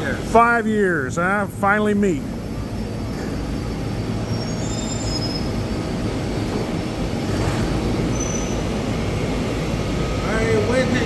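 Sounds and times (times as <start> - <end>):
factory machinery running: 0.0 - 11.0
brief high squeaks: 8.1 - 8.6.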